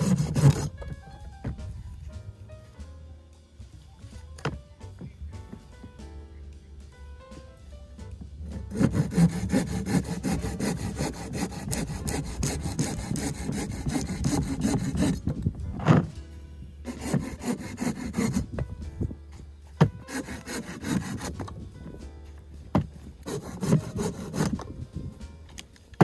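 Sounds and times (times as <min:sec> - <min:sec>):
hand saw cutting wood: 0:00.0 - 0:00.9, 0:08.5 - 0:16.1, 0:16.8 - 0:18.6, 0:19.7 - 0:21.6, 0:23.2 - 0:24.7.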